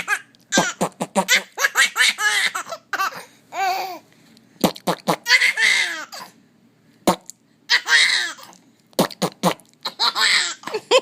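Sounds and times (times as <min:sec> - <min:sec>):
baby laughing: 0:00.0 - 0:04.0, 0:05.2 - 0:06.4, 0:07.7 - 0:08.6, 0:09.8 - 0:11.0.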